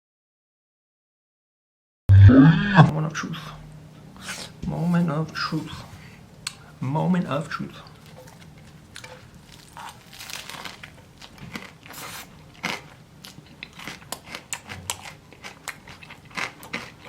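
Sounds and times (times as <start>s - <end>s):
crunchy fried chicken chewing: 7.8s - 17.0s.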